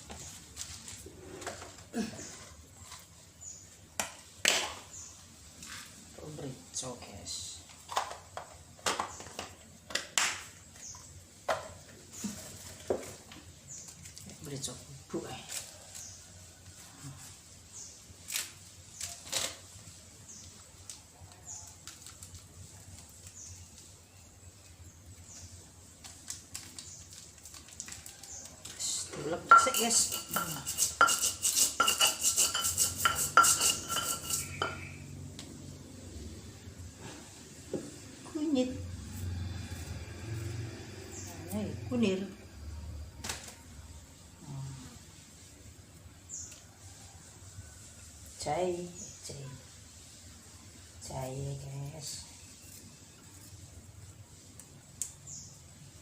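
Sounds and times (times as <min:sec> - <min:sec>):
kitchen items tapping and clicking: 0:07.8 - 0:10.4, 0:29.3 - 0:34.9
pestle pounding in mortar: 0:29.5 - 0:34.9.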